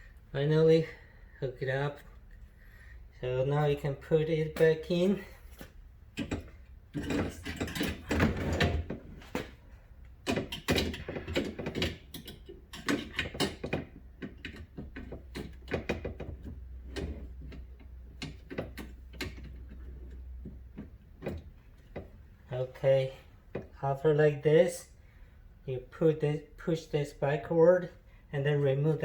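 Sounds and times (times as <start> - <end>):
metal hinge clicking and rattling: 6.2 - 9.5, 10.2 - 22.1.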